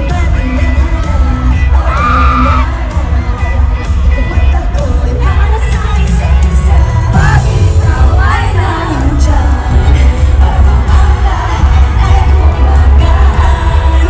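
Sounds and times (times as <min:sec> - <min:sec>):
crowd cheering: 0:00.0 - 0:14.0
live pop music with singing: 0:00.0 - 0:14.0.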